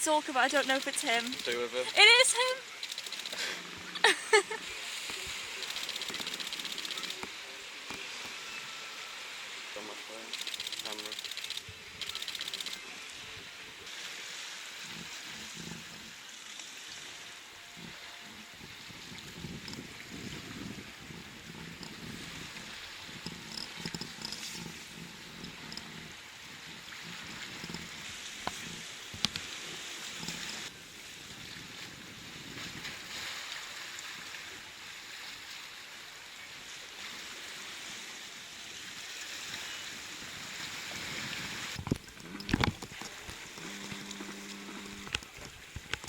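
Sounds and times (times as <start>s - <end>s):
sea surf: 0.0s - 17.6s
wind: 0.0s - 46.0s.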